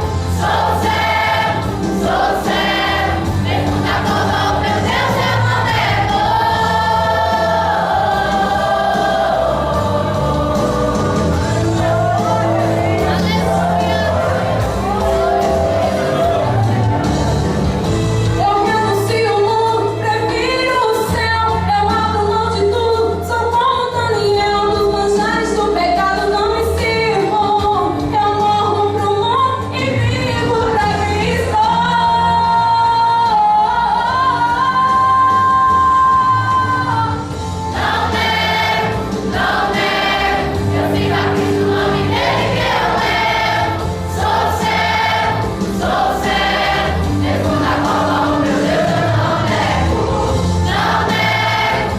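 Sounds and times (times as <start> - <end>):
choir singing gospel: 0.0 - 18.8, 29.8 - 51.9
instrumental accompaniment with bass: 0.0 - 51.9.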